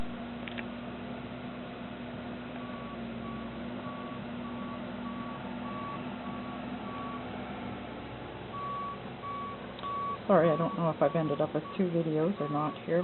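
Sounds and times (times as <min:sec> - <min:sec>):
diesel engine running: 0:00.0 - 0:13.0
backup alarm beeping: 0:02.6 - 0:07.2, 0:08.6 - 0:13.0.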